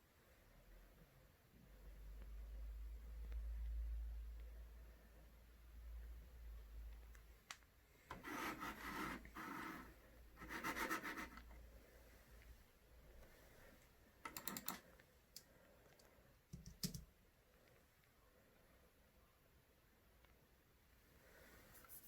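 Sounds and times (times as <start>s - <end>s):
rubbing and scratching: 8.1s - 11.5s, 21.7s - 22.0s.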